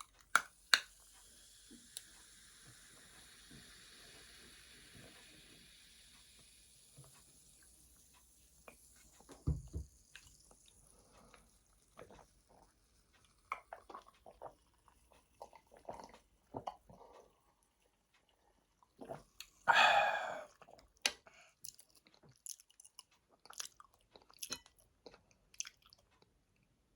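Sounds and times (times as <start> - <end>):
low thump: 9.4 - 9.9
wet chewing and smacking: 12.0 - 19.6, 20.6 - 26.4.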